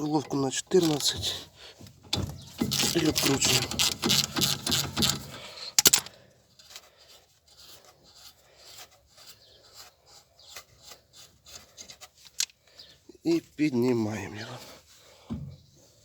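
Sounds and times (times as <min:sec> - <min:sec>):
metal parts rubbing: 0:00.2 - 0:12.6
ratchet wrench clicking: 0:02.6 - 0:06.1.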